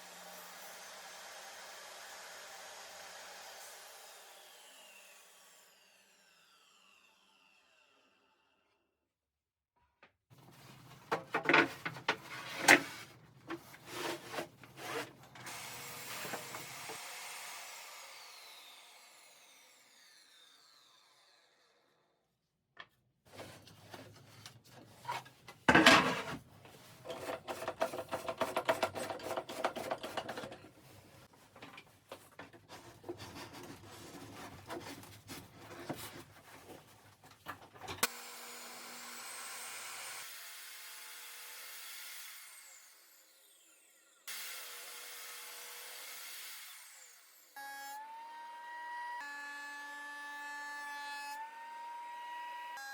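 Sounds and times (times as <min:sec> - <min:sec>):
woodworking machine whine: 0:00.0 - 0:08.0, 0:14.8 - 0:21.8, 0:38.0 - 0:52.9
wood scraping and rubbing: 0:10.4 - 0:15.4, 0:23.3 - 0:37.6.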